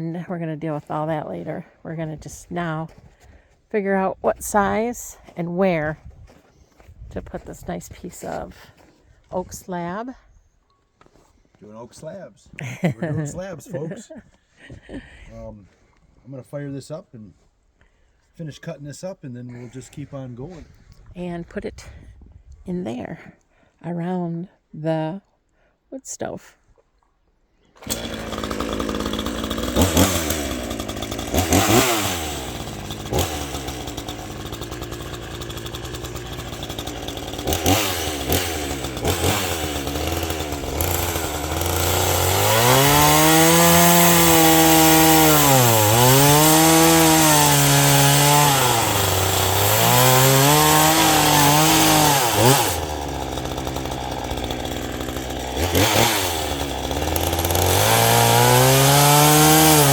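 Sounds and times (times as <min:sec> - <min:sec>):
chainsaw revving and cutting wood: 0:00.0 - 0:06.0, 0:06.8 - 0:10.0, 0:12.8 - 0:14.0, 0:27.8 - 0:59.9.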